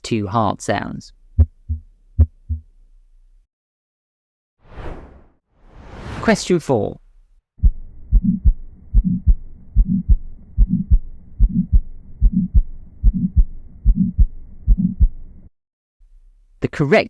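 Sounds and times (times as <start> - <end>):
heartbeat with murmur: 1.4 - 2.7, 7.6 - 15.4.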